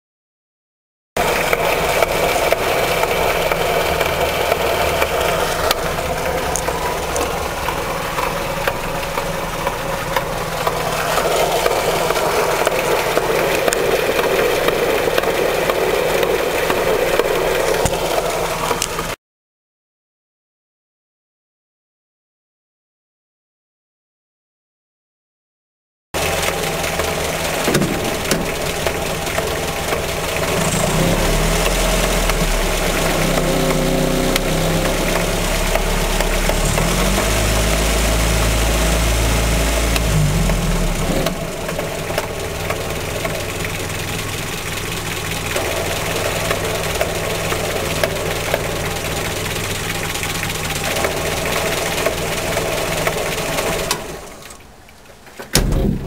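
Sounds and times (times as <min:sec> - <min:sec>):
engine running: 0:01.2 - 0:19.2, 0:26.2 - 0:56.0
gearbox knocking: 0:26.2 - 0:38.3, 0:39.7 - 0:54.1.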